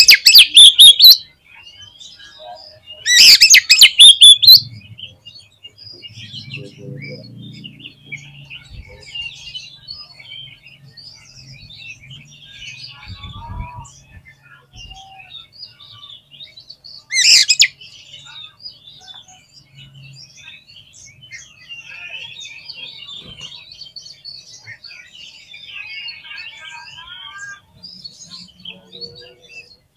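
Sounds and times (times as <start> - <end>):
bird singing chirps and whistles: 0.0 - 29.9.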